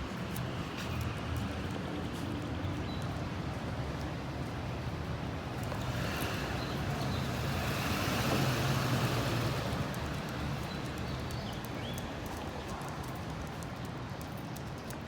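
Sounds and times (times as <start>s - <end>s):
road vehicle passing by: 5.4s - 11.4s.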